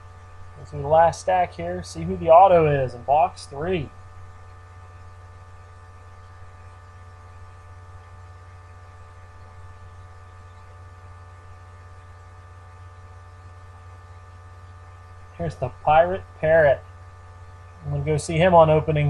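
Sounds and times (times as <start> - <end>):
electrical hum: 0.0 - 19.0.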